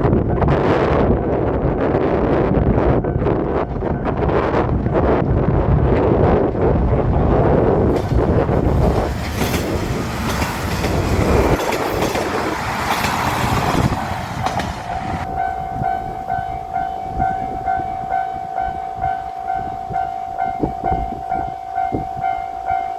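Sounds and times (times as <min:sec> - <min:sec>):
train rumbling past: 0:00.0 - 0:22.9
crossing alarm bell ringing: 0:14.8 - 0:22.9.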